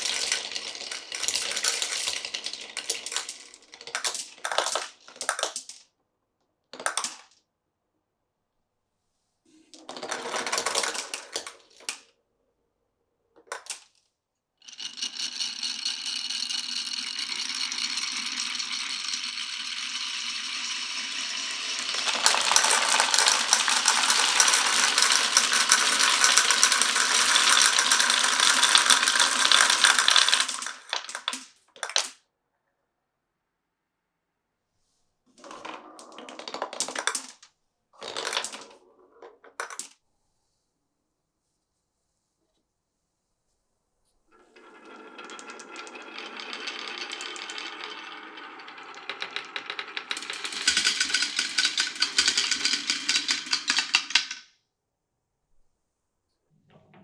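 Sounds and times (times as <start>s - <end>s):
marbles rolling down wooden run: 0.0s - 5.8s, 6.8s - 7.3s, 9.8s - 12.0s, 13.5s - 13.9s, 14.6s - 32.2s, 35.4s - 39.9s, 44.4s - 54.5s.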